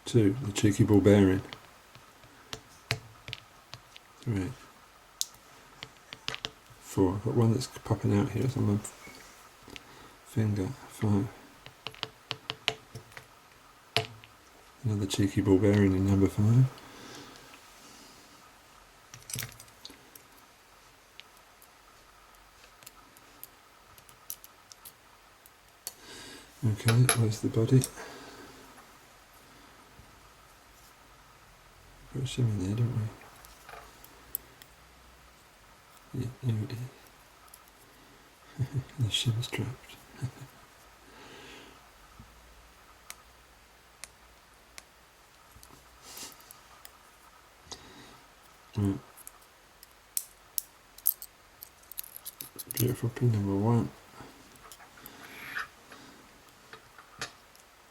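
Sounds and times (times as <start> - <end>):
metal lock parts clicking: 19.1 - 19.8, 49.2 - 53.0.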